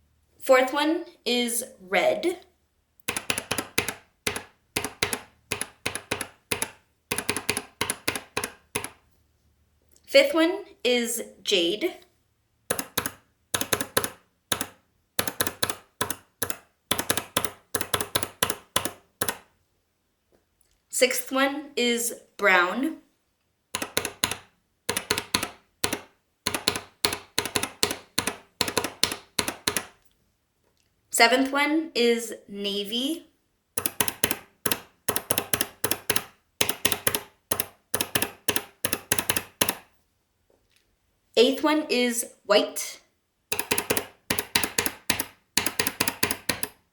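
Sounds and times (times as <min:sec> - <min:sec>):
keyboard switch clicking: 0:03.0 - 0:09.0, 0:12.7 - 0:19.4, 0:23.8 - 0:29.9, 0:33.8 - 0:39.8, 0:43.5 - 0:46.8
keyboard switch clicks: 0:03.0 - 0:09.0.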